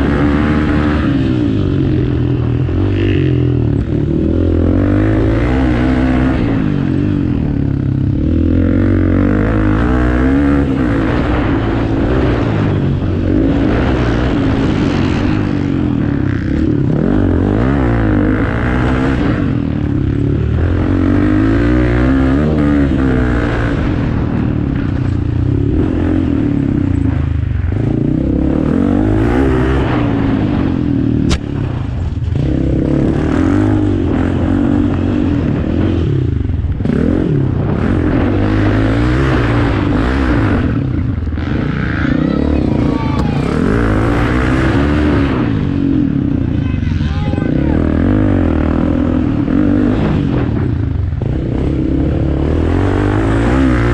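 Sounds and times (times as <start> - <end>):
racing engines revving: 32.2 - 53.9.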